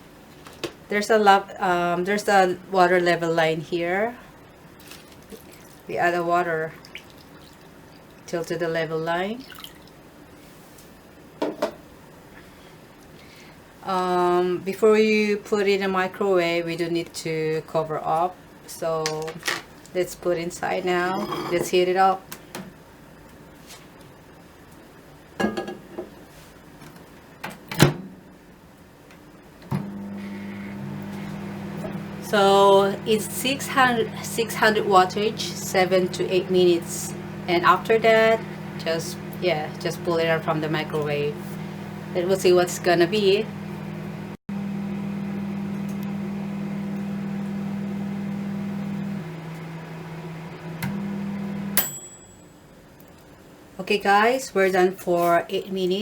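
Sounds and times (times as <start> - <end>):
sharp high tone: 21.1 - 21.7
microwave oven humming: 29.6 - 52.5.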